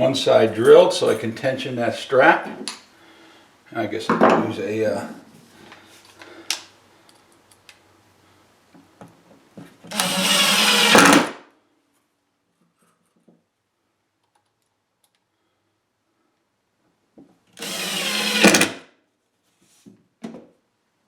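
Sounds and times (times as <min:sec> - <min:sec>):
power drill drilling wood: 0:09.9 - 0:11.4, 0:17.6 - 0:18.8.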